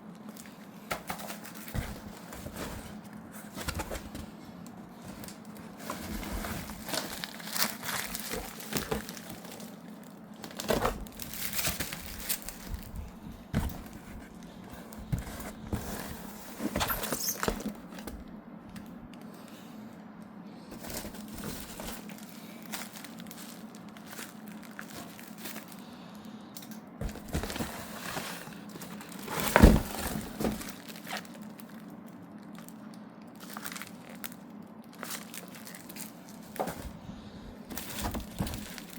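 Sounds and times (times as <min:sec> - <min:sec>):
faint steady hum: 0:00.0 - 0:38.9
plastic crinkling and tearing: 0:00.2 - 0:13.2, 0:20.8 - 0:25.8, 0:27.0 - 0:36.9, 0:37.7 - 0:38.9.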